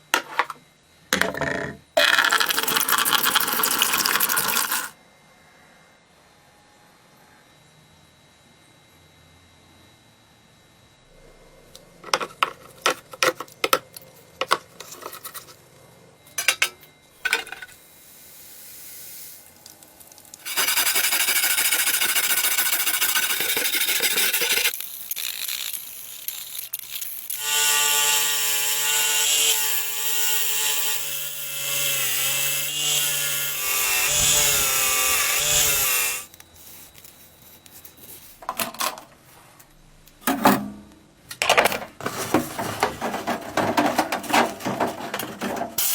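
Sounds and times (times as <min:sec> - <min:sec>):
power tool whining motor: 0:27.3 - 0:36.5.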